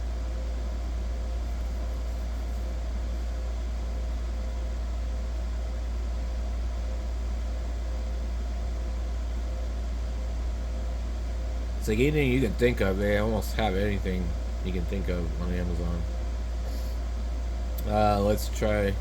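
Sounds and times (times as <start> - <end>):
low-pitched hum: 0.0 - 19.0.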